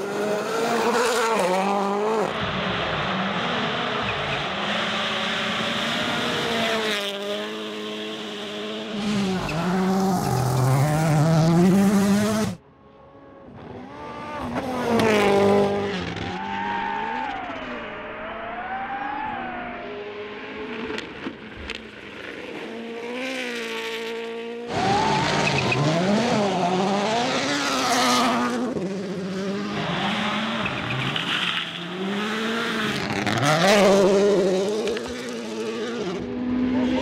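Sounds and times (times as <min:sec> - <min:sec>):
car passing and revving hard: 0:00.0 - 0:12.6, 0:13.5 - 0:21.0, 0:22.4 - 0:37.0
rally car engine through gear changes: 0:03.4 - 0:12.6, 0:22.5 - 0:37.0.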